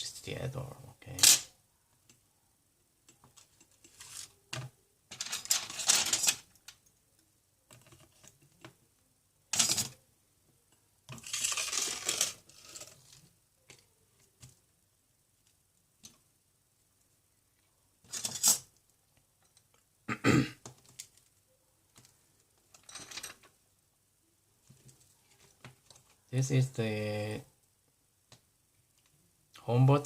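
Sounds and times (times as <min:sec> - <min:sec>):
small hard parts clattering: 0:01.1 - 0:01.5, 0:03.2 - 0:06.9, 0:09.5 - 0:10.0, 0:11.1 - 0:13.8, 0:18.0 - 0:18.8, 0:22.0 - 0:23.6.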